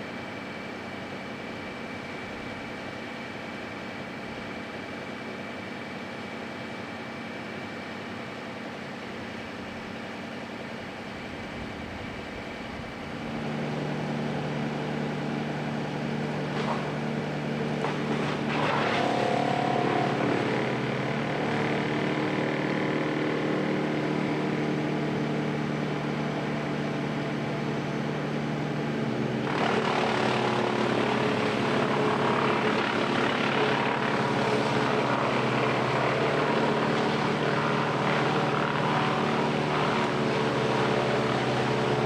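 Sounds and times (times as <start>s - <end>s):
motor engine running: 11.4s - 42.0s.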